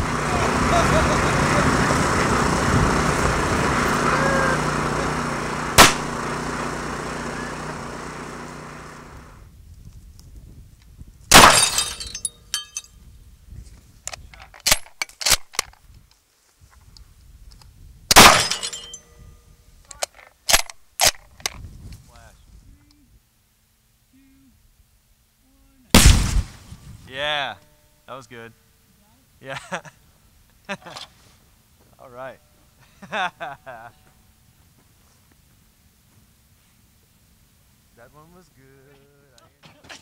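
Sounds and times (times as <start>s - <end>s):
loud blasts: 0.0s - 9.1s, 11.3s - 12.2s, 18.1s - 18.7s, 26.0s - 27.1s
sharp crack: 5.8s - 6.3s, 11.3s - 12.2s, 18.1s - 19.1s, 26.0s - 26.8s
glass shattering: 11.3s - 12.9s, 18.2s - 19.2s
falling debris clinks and pops: 11.3s - 13.0s, 18.1s - 19.2s.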